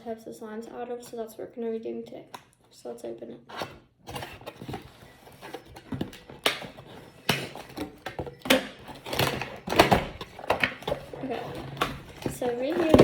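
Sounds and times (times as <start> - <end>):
packaging rustling and crinkling: 3.6 - 13.0.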